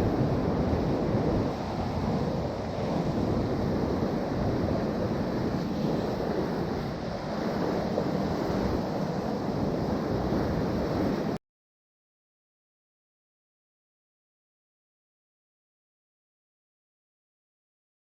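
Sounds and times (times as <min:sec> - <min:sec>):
sea surf rushing: 0:00.0 - 0:11.4
wind buffeting microphone: 0:00.0 - 0:11.4.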